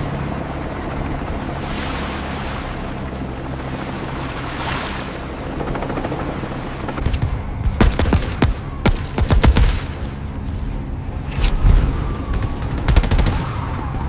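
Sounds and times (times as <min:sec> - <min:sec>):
sharp cracks and bangs: 0:07.0 - 0:10.2.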